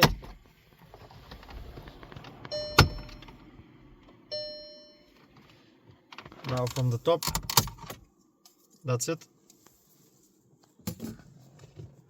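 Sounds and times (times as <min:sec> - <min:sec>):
short ringing tone: 0:02.5 - 0:03.2, 0:04.3 - 0:05.2.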